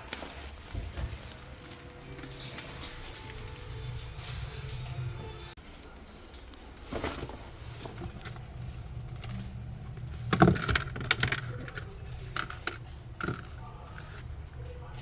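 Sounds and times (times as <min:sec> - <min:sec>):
sharp knocks and rattles: 0:06.4 - 0:14.6.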